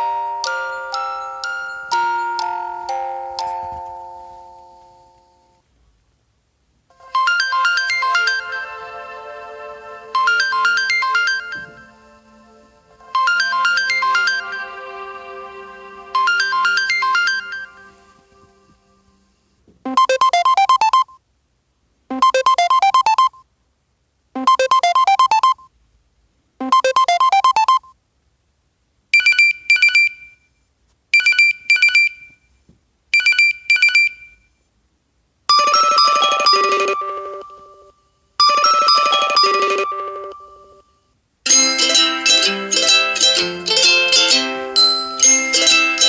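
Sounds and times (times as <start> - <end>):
chiming ringtone melody: 0.0 - 5.6, 6.9 - 18.2, 19.9 - 21.1, 22.1 - 23.4, 24.4 - 25.6, 26.7 - 27.8, 35.5 - 46.0
rising run of notes: 8.0 - 19.2.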